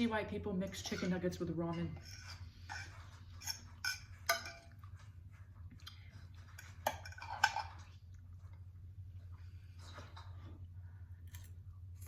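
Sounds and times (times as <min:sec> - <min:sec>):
faint steady hum: 0:00.0 - 0:12.0
utensils clinking against dish: 0:00.8 - 0:04.8, 0:06.6 - 0:07.9.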